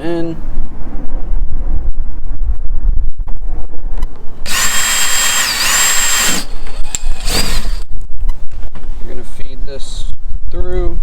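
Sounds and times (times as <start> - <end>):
power drill whine: 4.5 - 7.9.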